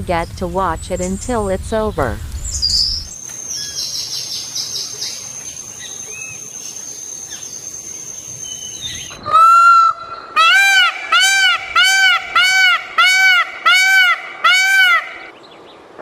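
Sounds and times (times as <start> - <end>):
bird calling loudly: 8.4 - 15.3.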